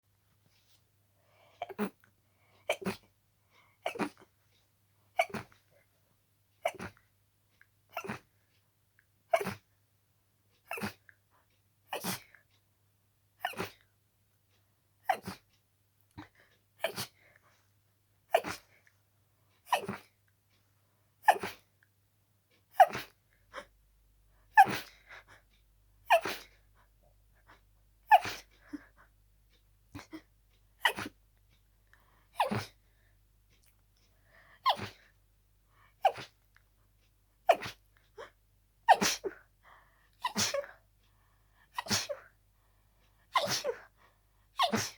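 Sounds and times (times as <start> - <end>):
person sneezing: 5.2 - 5.6, 9.3 - 9.6, 10.7 - 11.0, 16.8 - 17.1, 18.3 - 18.7, 19.7 - 20.1, 21.2 - 21.6, 22.8 - 23.1, 24.6 - 24.9, 26.1 - 26.5, 28.1 - 28.5, 30.8 - 31.1, 32.4 - 32.8, 34.6 - 35.0, 36.0 - 36.4, 37.5 - 37.8, 38.9 - 39.4, 40.2 - 40.8, 41.8 - 42.3, 43.3 - 43.9, 44.6 - 44.9.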